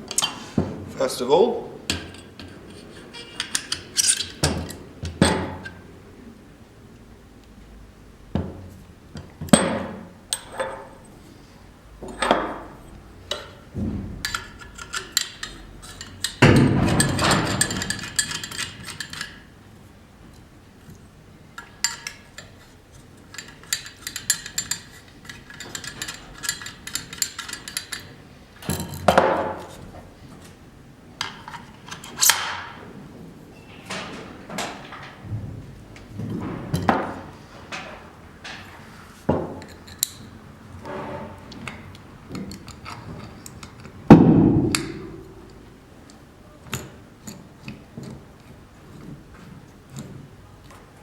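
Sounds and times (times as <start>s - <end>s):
scraping rattle: 1.9s - 5.8s, 12.1s - 19.6s, 21.6s - 29.0s
heavy clunks: 12.0s - 18.6s.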